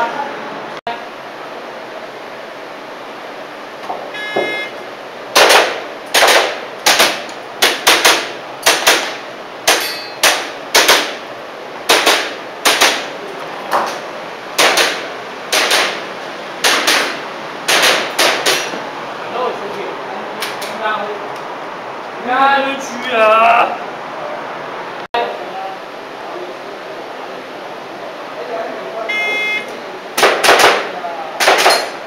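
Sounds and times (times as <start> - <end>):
shot timer beep: 4.1 - 4.8, 29.1 - 29.7
airsoft pistol firing: 5.4 - 11.2, 11.9 - 13.1, 14.6 - 16.0, 16.6 - 18.7, 30.2 - 32.0
hits ringing on steel targets: 9.7 - 11.2, 31.4 - 32.0.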